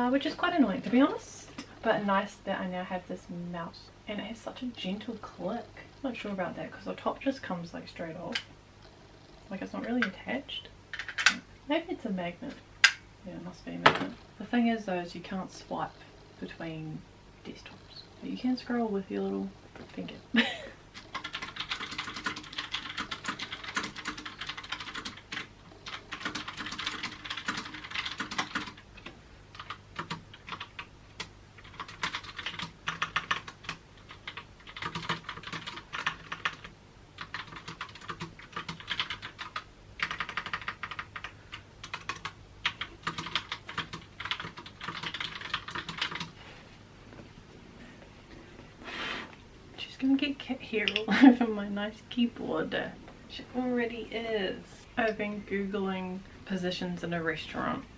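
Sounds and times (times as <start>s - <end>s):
mechanical keyboard typing: 21.0s - 46.3s.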